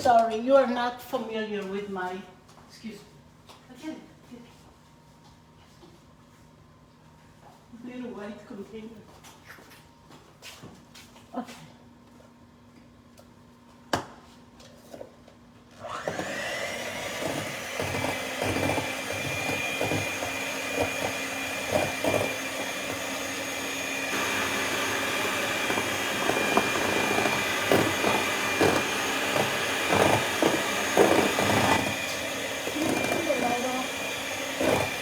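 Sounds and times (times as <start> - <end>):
electric mixer whining: 15.8 - 35.0.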